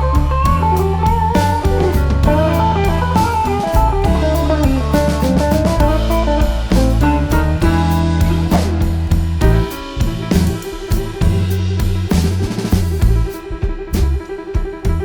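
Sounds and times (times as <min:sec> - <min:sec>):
electric guitar melody: 0:00.0 - 0:11.0
bass guitar: 0:00.0 - 0:15.0
drum kit beat: 0:00.0 - 0:15.0.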